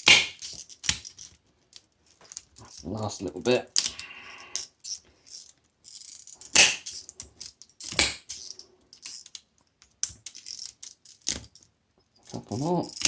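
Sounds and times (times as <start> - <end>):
cutters snapping through copper wire: 6.4 - 7.1, 12.3 - 13.0.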